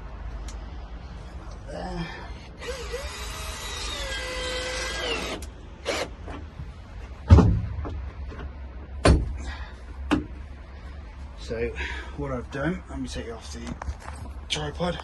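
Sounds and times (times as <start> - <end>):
power tool motor whining: 2.6 - 6.1
sharp knocks: 7.3 - 8.0.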